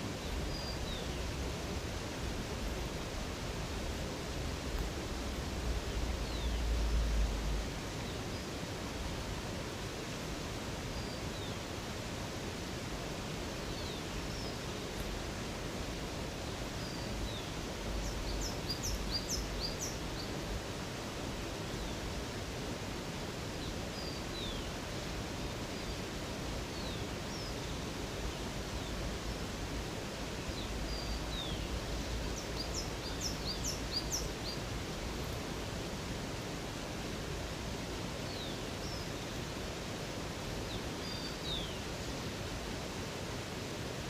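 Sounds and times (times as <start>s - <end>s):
rushing water: 0.0s - 44.0s
small birds chirping: 6.1s - 8.6s, 16.4s - 20.4s, 23.6s - 24.8s, 25.4s - 29.5s, 30.4s - 35.4s, 40.7s - 42.0s.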